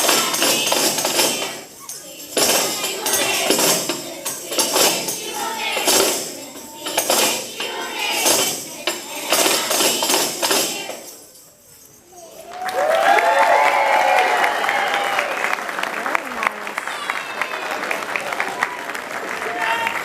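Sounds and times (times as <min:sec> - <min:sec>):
children singing: 0:00.0 - 0:11.2
tambourines shaken on a beat: 0:00.0 - 0:14.4
audience cheering and clapping: 0:12.4 - 0:20.0.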